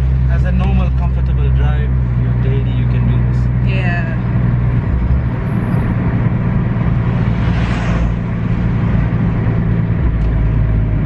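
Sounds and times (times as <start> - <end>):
car engine drone from cabin: 0.0 - 11.0
brief whoosh: 7.0 - 8.7.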